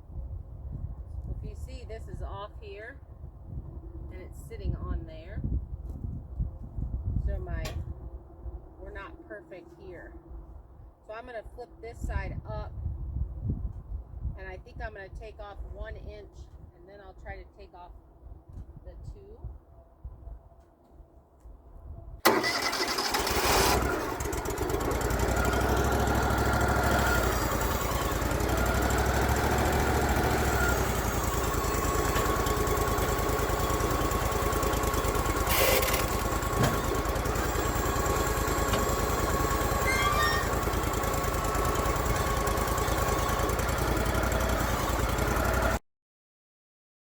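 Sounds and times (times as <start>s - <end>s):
band sawmill cutting log: 22.4s - 45.8s.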